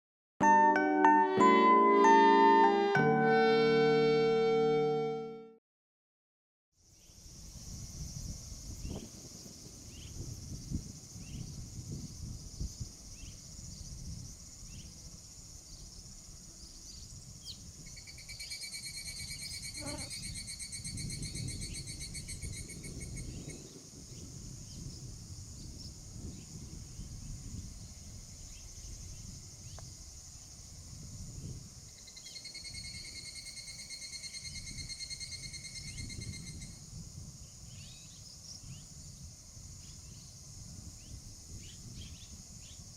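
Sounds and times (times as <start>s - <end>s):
crickets chirping: 6.8s - 42.9s
pulsing buzzy insect trill: 18.0s - 21.9s.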